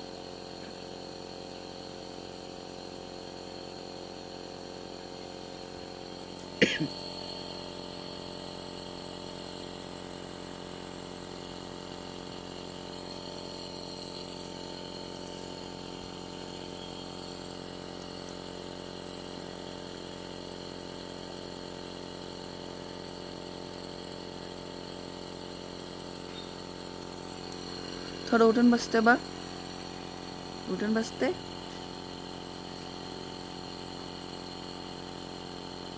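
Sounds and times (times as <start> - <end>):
nebulizer humming: 0.0 - 35.9.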